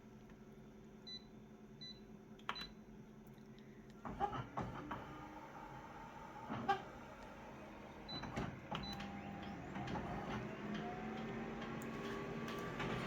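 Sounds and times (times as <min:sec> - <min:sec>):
photocopier scanning motor hum: 0:04.6 - 0:13.0.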